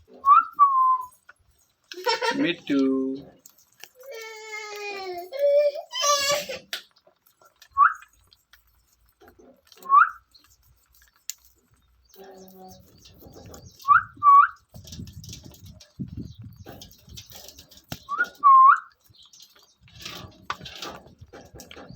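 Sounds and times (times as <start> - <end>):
parrot whistling: 0.2 - 1.1, 7.7 - 8.1, 9.8 - 10.2, 13.8 - 14.6, 18.1 - 18.9.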